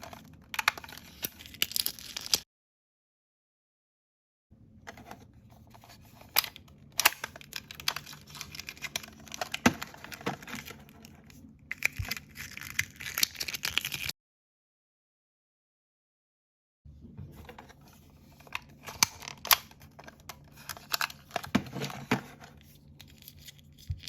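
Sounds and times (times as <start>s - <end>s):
plastic packaging tearing and crinkling: 11.7s - 14.1s.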